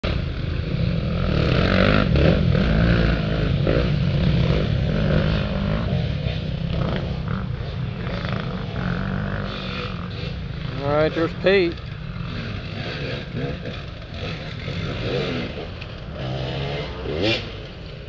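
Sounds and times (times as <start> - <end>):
dirt bike engines revving: 0.0 - 18.0.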